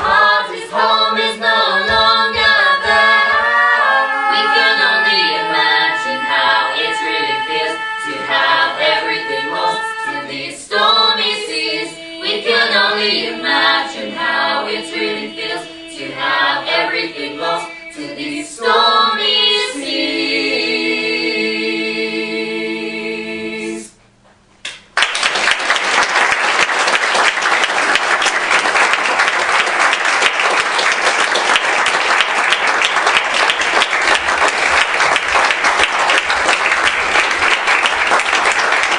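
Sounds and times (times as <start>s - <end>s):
group of voices singing: 0.0s - 24.0s
audience applauding: 24.9s - 38.9s.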